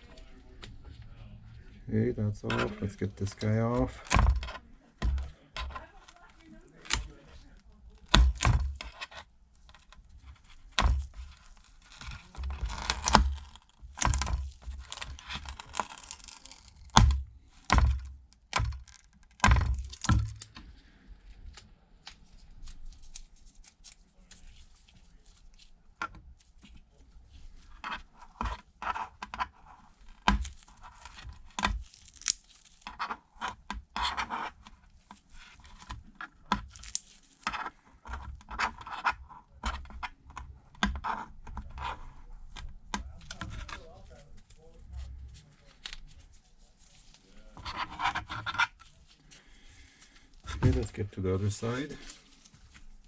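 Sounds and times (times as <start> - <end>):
adhesive tearing: 10.6 - 17.7, 18.8 - 20.6, 29.8 - 33.4, 36.4 - 37.9.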